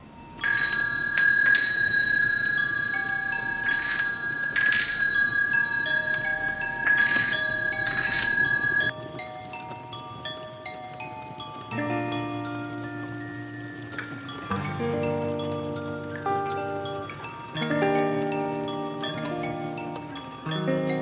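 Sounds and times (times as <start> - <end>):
fainter bell tones: 0.0 - 21.0
high steady ringing: 0.0 - 21.0.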